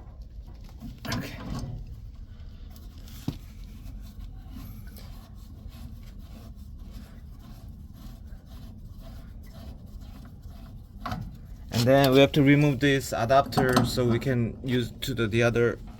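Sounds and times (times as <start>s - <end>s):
metal scraping and clicking: 0.6s - 2.1s, 11.0s - 15.2s.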